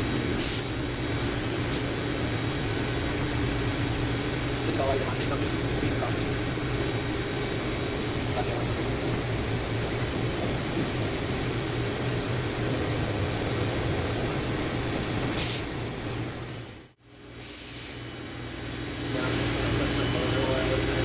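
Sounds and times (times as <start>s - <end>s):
steady background hum: 0.0s - 21.0s
short hissing sprays: 0.4s - 0.8s, 15.3s - 15.8s, 17.4s - 18.0s.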